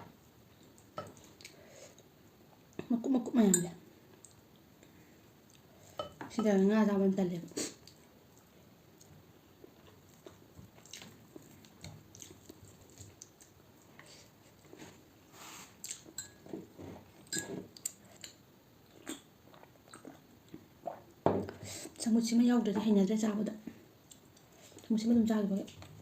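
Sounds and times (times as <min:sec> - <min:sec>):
person chewing food: 0:07.8 - 0:14.9, 0:15.8 - 0:16.4, 0:17.0 - 0:21.1.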